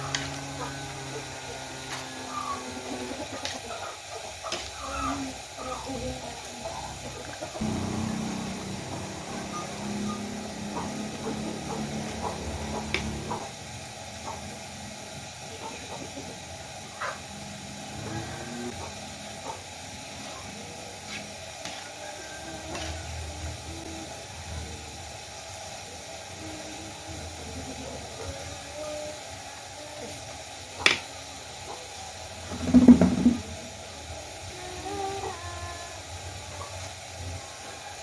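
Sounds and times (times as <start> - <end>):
food sizzling in a pan: 0.0 - 38.0.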